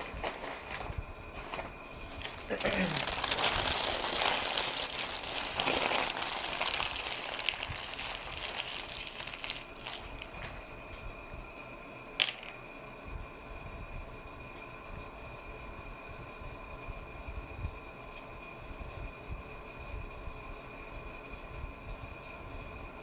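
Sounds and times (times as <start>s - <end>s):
crunchy chewing: 2.0s - 10.8s.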